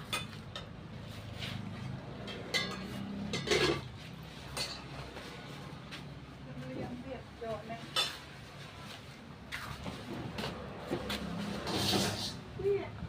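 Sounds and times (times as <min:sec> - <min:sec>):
dishes and utensils clinking: 0:00.0 - 0:00.8, 0:01.8 - 0:05.2, 0:07.9 - 0:08.3.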